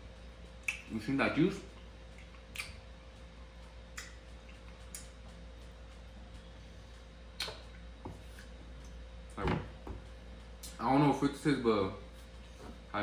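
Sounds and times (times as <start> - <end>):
low steady hum: 0.0 - 13.0
mouth clicks and smacks eating: 0.6 - 1.0, 1.7 - 2.9, 3.9 - 5.3, 7.3 - 7.8.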